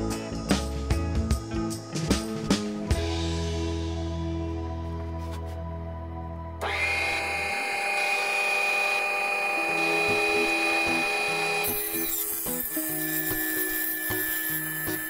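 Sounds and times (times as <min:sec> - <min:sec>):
background music: 0:00.0 - 0:07.6, 0:09.4 - 0:15.0
table saw motor whine: 0:06.6 - 0:15.0.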